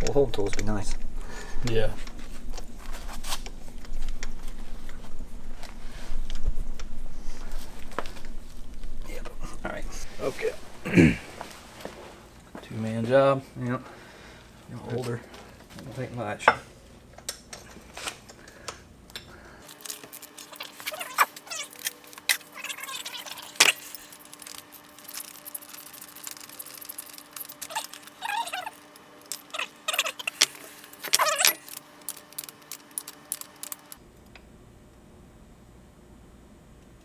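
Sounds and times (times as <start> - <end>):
faint steady hum: 0.0 - 37.0
metal tools clinking and scraping: 17.5 - 18.2, 19.2 - 33.9.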